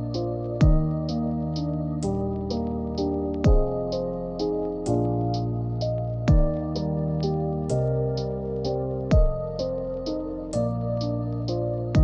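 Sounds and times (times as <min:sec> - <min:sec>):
light hi-hat ticks: 0:00.0 - 0:12.0
sustained keyboard chords: 0:00.0 - 0:12.0
deep kick drum: 0:00.6 - 0:01.2, 0:03.4 - 0:03.9, 0:06.3 - 0:06.8, 0:09.1 - 0:09.6.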